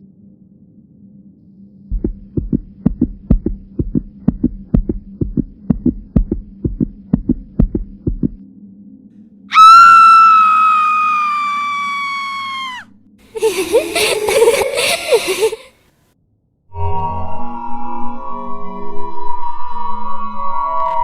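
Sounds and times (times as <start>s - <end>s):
steady low hum: 0.0s - 9.5s
heartbeat thumps: 1.9s - 8.4s
long high-pitched scream: 9.5s - 12.9s.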